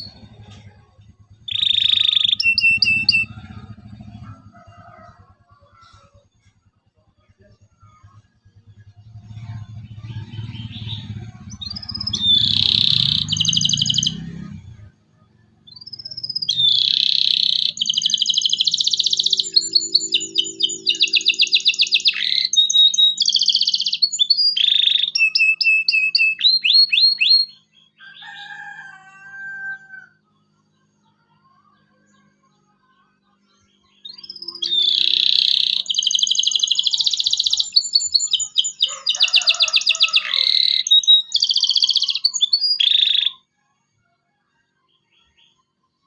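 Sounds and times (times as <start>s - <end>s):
low rumble: 0.0s - 5.5s, 7.4s - 15.8s
canary singing: 0.0s - 6.5s, 7.4s - 30.2s, 33.2s - 43.5s.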